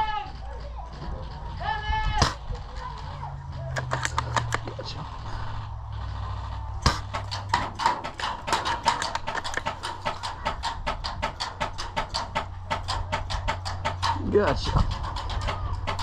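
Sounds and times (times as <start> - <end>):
low rumble: 0.0 - 16.0
loud crack: 2.1 - 3.1, 3.7 - 4.8, 5.6 - 14.3
sharp clicks and taps: 3.6 - 4.8, 6.8 - 16.0.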